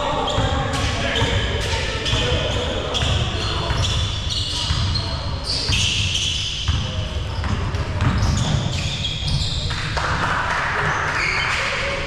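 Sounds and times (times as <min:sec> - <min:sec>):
players' voices: 0:00.0 - 0:12.0
basketball bouncing on court: 0:00.3 - 0:09.7.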